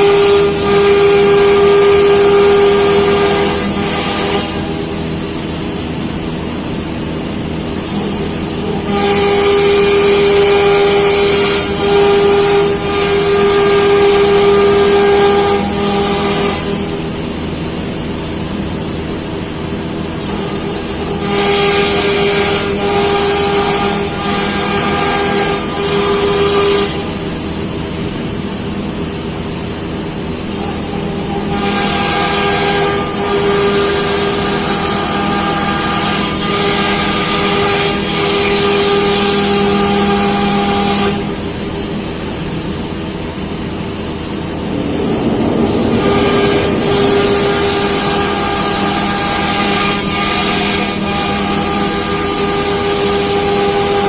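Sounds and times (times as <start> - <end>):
router spindle whine: 7.9 - 17.2, 44.2 - 54.0
hissing cutting sound: 43.5 - 51.8.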